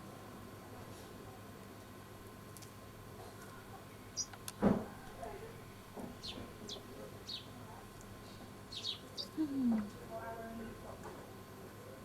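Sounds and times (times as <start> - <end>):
bird chirping: 4.2 - 4.4, 6.2 - 7.5, 8.7 - 9.6.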